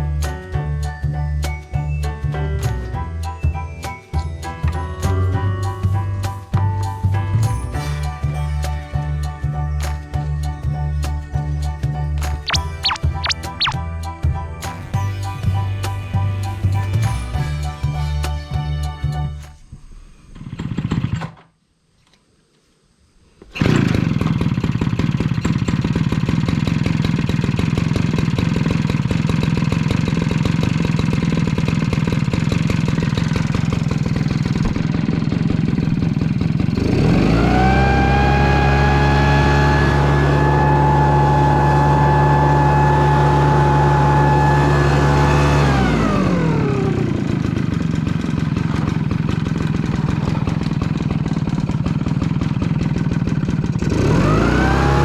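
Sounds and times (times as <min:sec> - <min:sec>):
small engine starting and revving: 0:20.3 - 0:21.4, 0:23.4 - 0:55.0.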